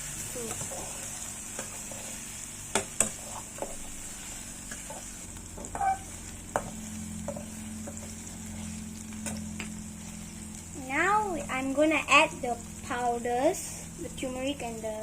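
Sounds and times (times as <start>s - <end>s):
utensil stirring and scraping pan: 0.0s - 10.7s
food sizzling in oil: 0.0s - 15.0s.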